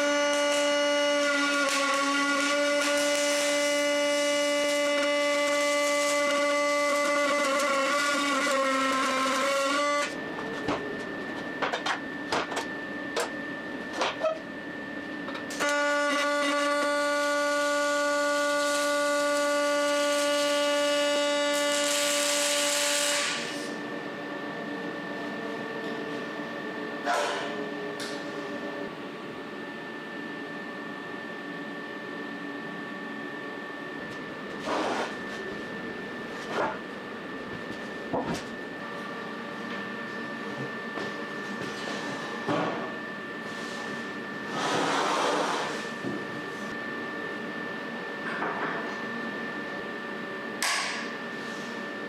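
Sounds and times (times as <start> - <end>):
electric power tool motor running: 0.0 - 10.2, 15.5 - 23.8.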